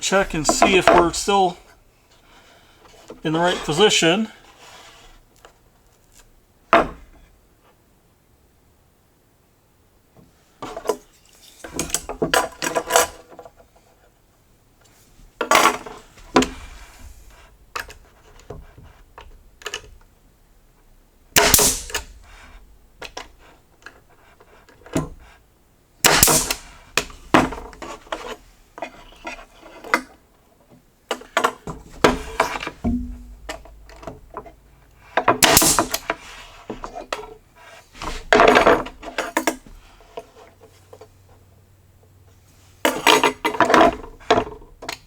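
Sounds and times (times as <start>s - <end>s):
wood and tools knocking: 0.2s - 1.2s, 31.2s - 37.3s
nail gun shots: 21.4s - 22.6s, 26.0s - 26.8s, 32.2s - 34.2s, 35.4s - 36.2s
short air hiss: 21.4s - 22.7s.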